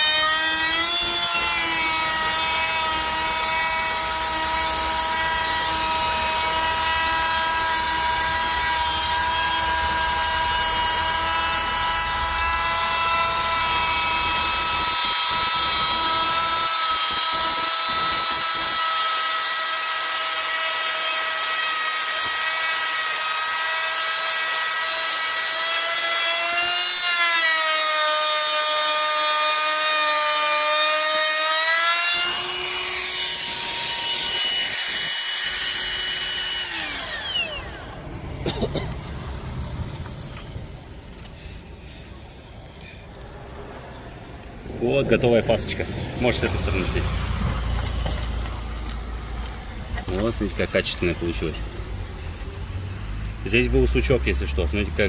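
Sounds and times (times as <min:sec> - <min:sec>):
trim router milling wood: 0:00.0 - 0:38.5, 0:45.1 - 0:53.7
low rumble: 0:37.6 - 0:50.7.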